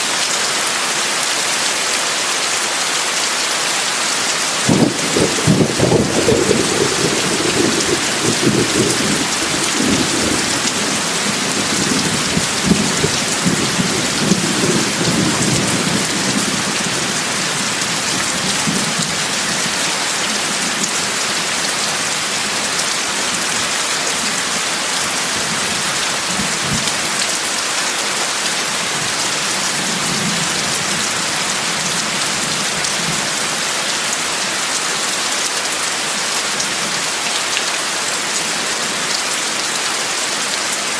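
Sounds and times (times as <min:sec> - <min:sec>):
heavy rain hissing: 0:00.0 - 0:40.9
thunder rumbling: 0:04.7 - 0:19.1.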